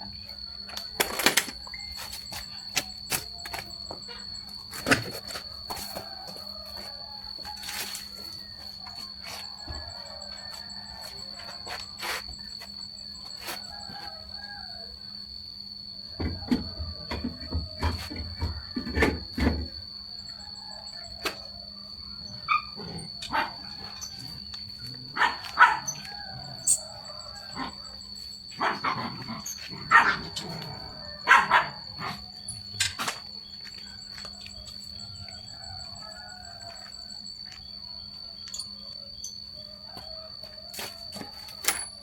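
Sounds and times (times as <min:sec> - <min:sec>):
steady high-pitched tone: 0:00.0 - 0:42.0
dog barking: 0:25.2 - 0:26.0, 0:29.9 - 0:30.3, 0:31.2 - 0:32.2.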